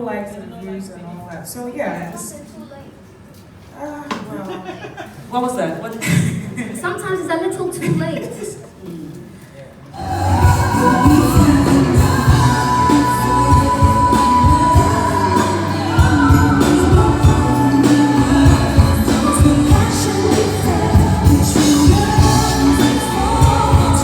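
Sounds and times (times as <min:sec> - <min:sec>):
person singing long notes: 0:10.0 - 0:24.0
pop song with beat and bass: 0:10.0 - 0:24.0.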